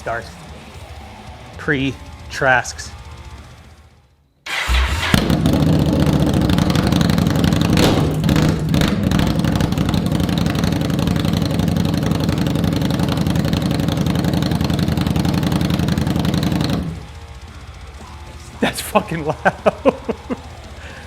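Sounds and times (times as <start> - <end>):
motorcycle engine idling loud: 0.0 - 4.1, 5.0 - 21.0
motorcycle engine cranking: 4.5 - 21.0.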